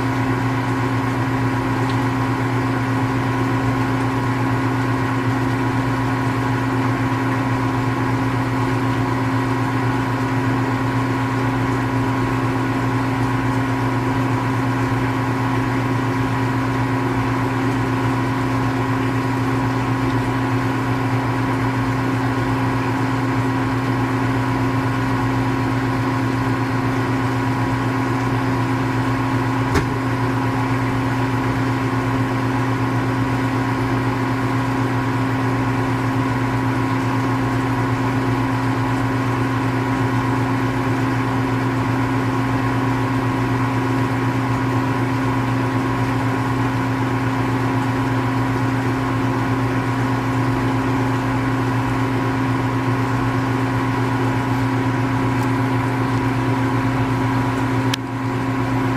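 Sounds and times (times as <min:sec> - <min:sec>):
mechanical hum with whine: 0:00.0 - 0:58.9
short click: 0:29.7 - 0:30.0.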